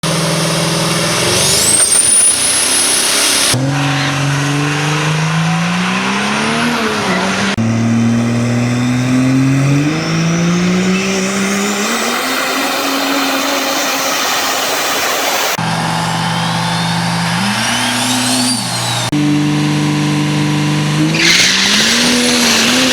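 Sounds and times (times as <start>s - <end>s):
diesel engines revving: 0.0s - 22.9s.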